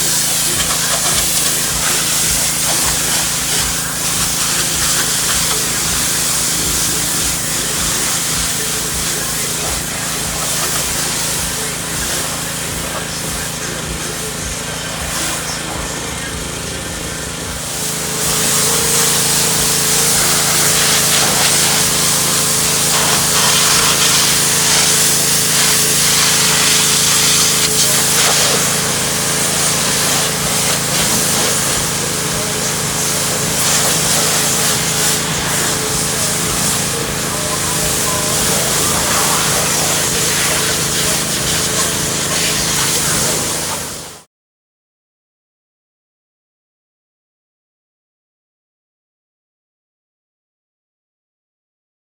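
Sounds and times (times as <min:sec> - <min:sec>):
motor running: 0:00.0 - 0:44.2
pressure washer spraying: 0:00.0 - 0:44.3
steady whine: 0:00.0 - 0:44.3.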